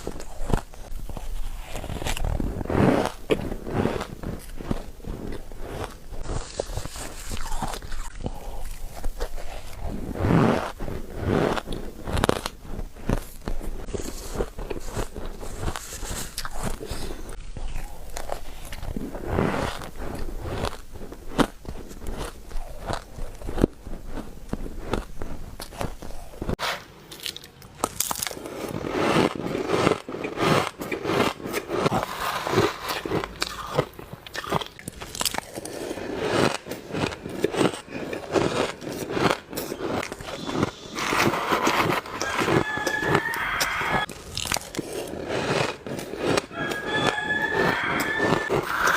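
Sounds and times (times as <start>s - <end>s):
ice crunching between teeth: 0.0s - 48.9s.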